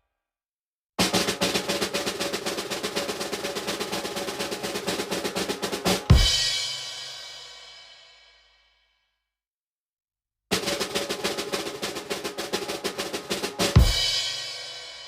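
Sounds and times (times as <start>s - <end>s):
snare drum roll: 1.0s - 7.2s, 10.5s - 15.0s
bass drum and cymbal crash: 1.0s - 8.4s, 10.5s - 15.0s.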